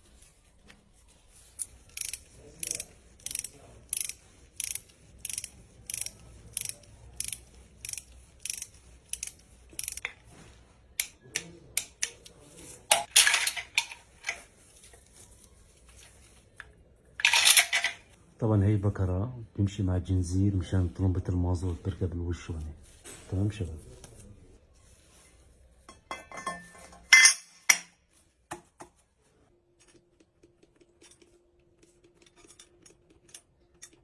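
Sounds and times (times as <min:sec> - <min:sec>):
ratchet wrench clicking: 0:01.9 - 0:10.1.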